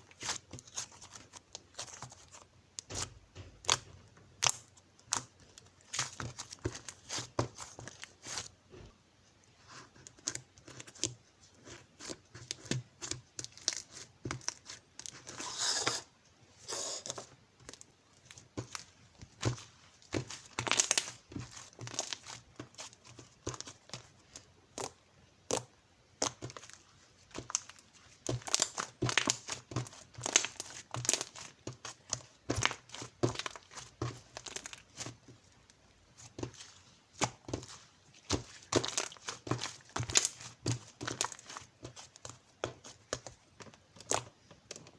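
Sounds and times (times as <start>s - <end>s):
paper or plastic crinkling: 17.1s - 24.4s, 26.3s - 35.5s, 36.1s - 44.9s.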